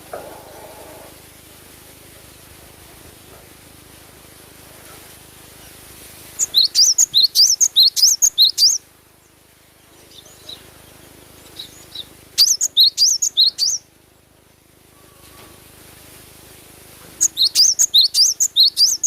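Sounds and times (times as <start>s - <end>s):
faint bird calls: 0.0s - 1.4s, 9.8s - 13.9s, 14.9s - 15.7s, 17.2s - 19.0s
bird singing high whistled notes: 6.4s - 8.8s, 11.6s - 13.9s, 17.2s - 19.0s.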